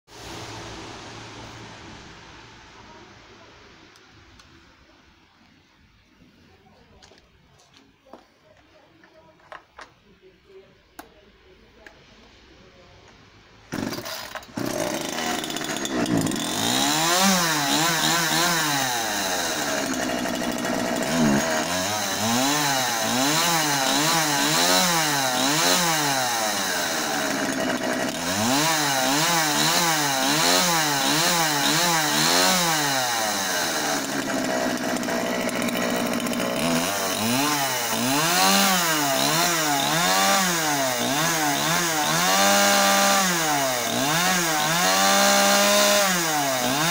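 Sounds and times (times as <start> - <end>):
chainsaw engine revving: 13.7 - 46.9.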